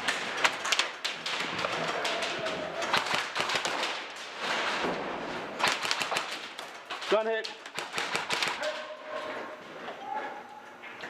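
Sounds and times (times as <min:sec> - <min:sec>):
airsoft guns firing: 0:00.0 - 0:04.5, 0:05.6 - 0:08.8.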